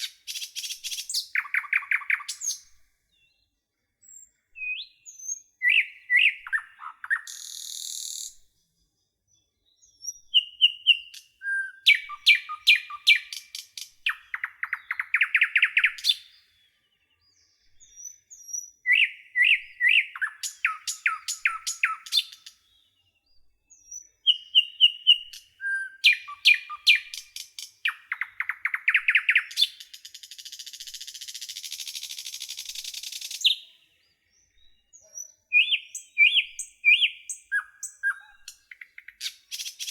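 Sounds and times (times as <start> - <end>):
songbird chirps and trills: 0.0 - 39.9.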